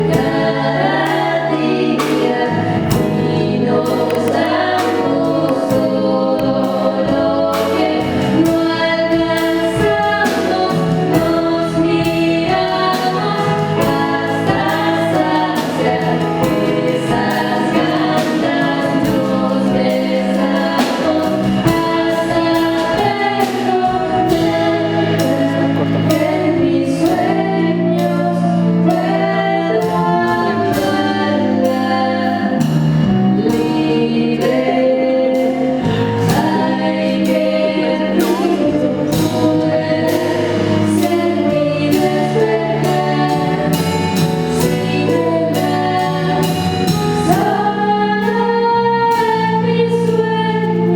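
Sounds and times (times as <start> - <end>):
steady percussive beat: 0.0 - 30.2
vocal group singing in harmony: 0.0 - 50.9.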